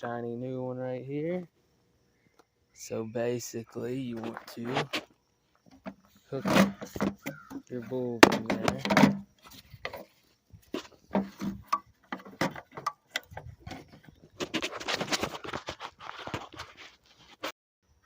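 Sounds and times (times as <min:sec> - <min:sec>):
rubbing and clicking: 0:08.2 - 0:17.5.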